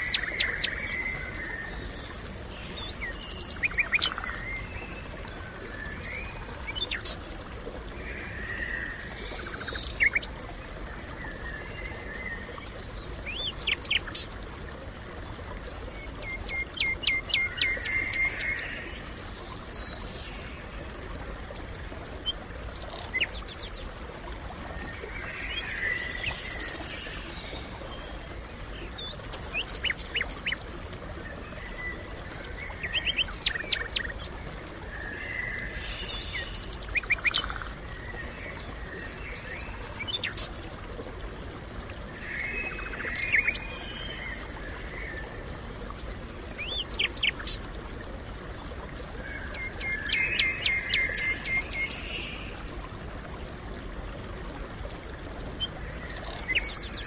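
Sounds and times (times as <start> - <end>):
birds chirping and trilling: 0.0 - 10.5, 11.2 - 15.0, 24.8 - 34.3, 35.0 - 45.3, 46.4 - 52.5, 55.3 - 57.0.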